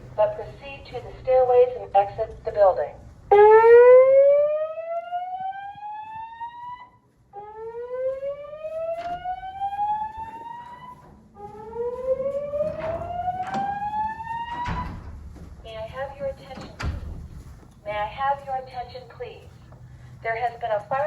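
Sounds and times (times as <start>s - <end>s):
fire alarm whoop tone: 3.3s - 15.0s.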